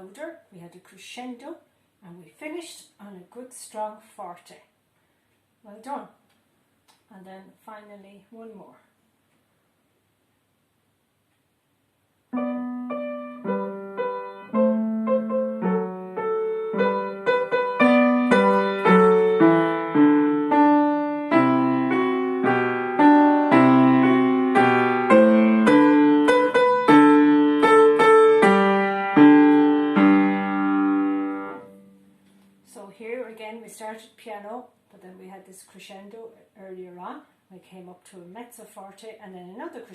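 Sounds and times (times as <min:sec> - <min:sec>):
piano piece: 0:12.3 - 0:32.6.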